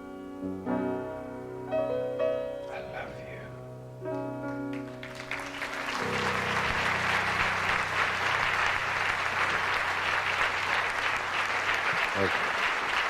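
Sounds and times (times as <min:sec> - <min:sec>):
audience applauding: 0:04.5 - 0:13.0.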